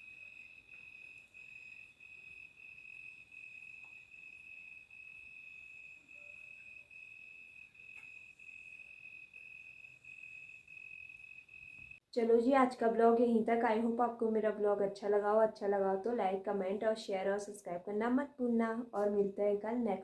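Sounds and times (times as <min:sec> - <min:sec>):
cricket trilling: 0:00.0 - 0:12.0.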